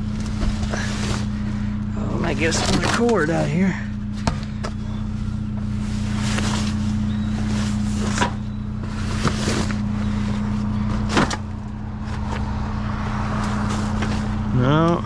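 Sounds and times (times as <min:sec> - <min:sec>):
vehicle engine idling: 0:00.0 - 0:15.0
rustling: 0:05.1 - 0:11.2.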